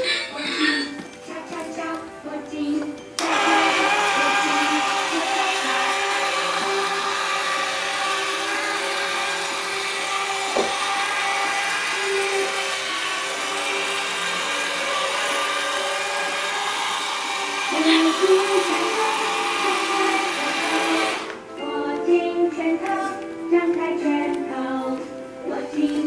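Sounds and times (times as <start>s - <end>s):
toy train motor whirring: 3.2s - 21.4s.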